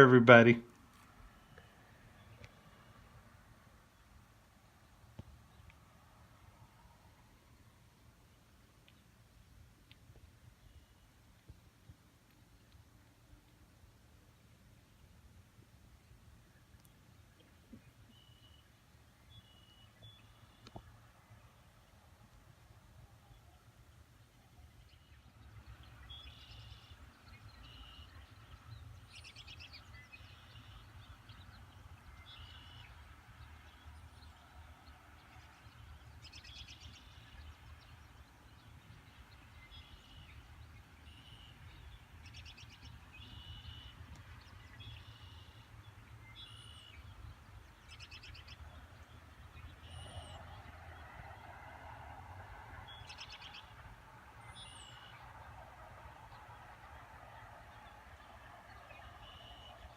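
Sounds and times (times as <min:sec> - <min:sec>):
bird pulsed call: 0:17.8 - 0:20.9, 0:25.9 - 0:30.9, 0:32.1 - 0:33.0, 0:39.5 - 0:47.2, 0:49.7 - 0:50.5, 0:58.8 - 0:59.9.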